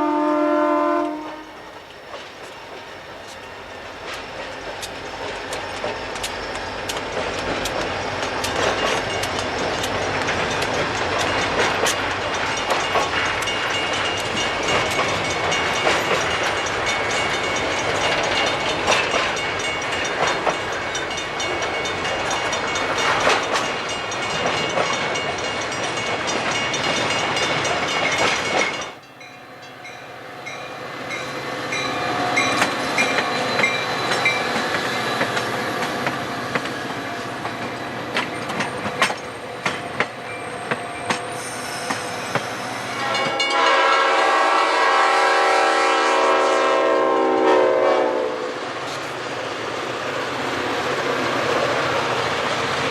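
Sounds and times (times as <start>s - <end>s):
train wheels clicking over rail joints: 1.2s - 29.1s, 29.8s - 43.6s.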